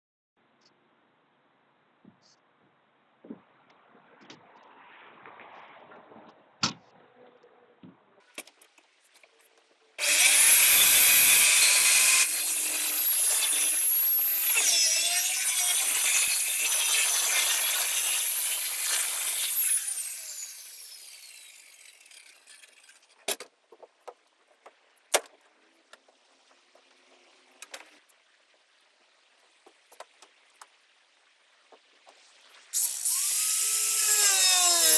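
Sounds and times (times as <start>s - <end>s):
power tool whining while cutting: 10.0s - 22.9s, 32.8s - 34.9s.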